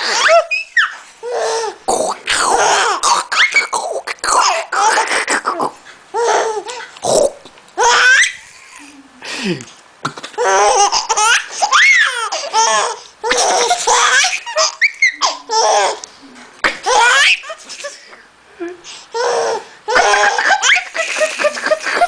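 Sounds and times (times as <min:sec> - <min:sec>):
baby laughing: 0:00.0 - 0:07.0, 0:07.8 - 0:08.8, 0:10.0 - 0:18.0, 0:19.2 - 0:22.0
adult making silly noises: 0:01.9 - 0:05.8.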